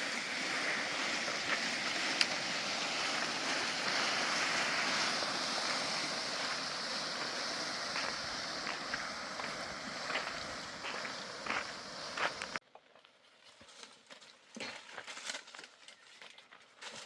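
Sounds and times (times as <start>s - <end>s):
steady rushing noise: 0.0s - 12.6s.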